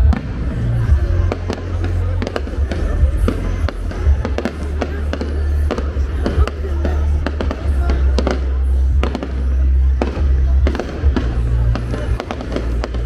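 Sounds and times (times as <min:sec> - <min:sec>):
fireworks bangs and crackles: 0:00.0 - 0:13.0
loud music with heavy bass: 0:00.0 - 0:13.0.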